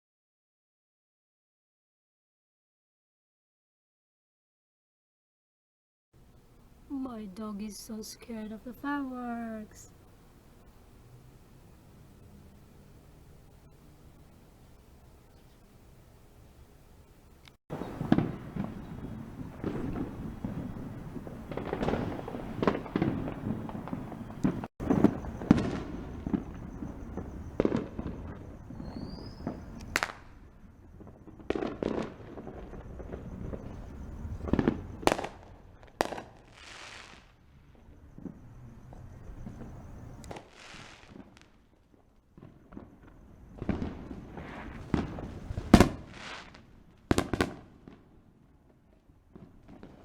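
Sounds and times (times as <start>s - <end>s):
fireworks bangs and crackling: 17.7s - 50.0s.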